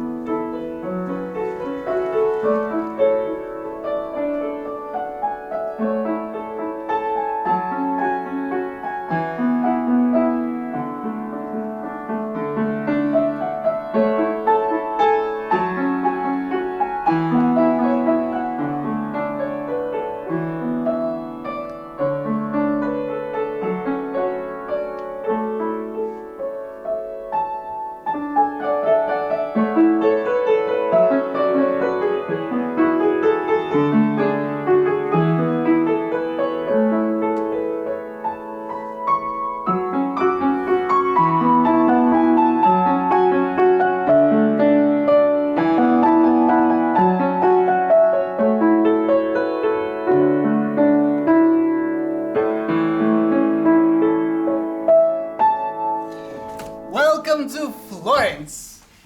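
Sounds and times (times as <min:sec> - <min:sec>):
piano music: 0:00.0 - 0:26.0.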